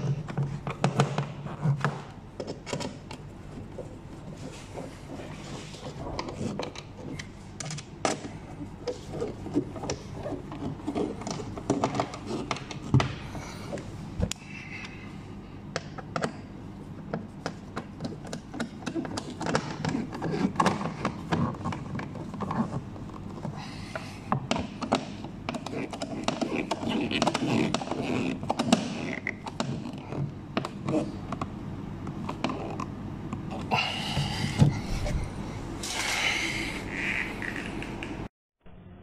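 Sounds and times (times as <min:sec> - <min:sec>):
hands clicking plastic parts: 0:15.7 - 0:16.4, 0:17.0 - 0:31.5.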